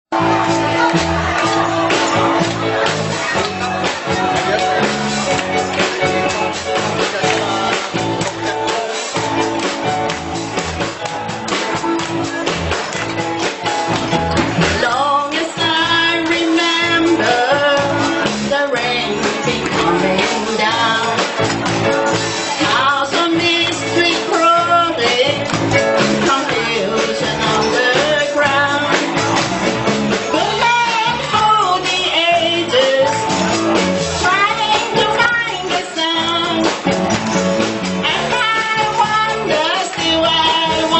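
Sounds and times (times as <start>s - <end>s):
band playing: 0.1s - 40.9s
lead singer singing: 14.6s - 29.4s, 30.1s - 37.0s, 37.9s - 40.9s.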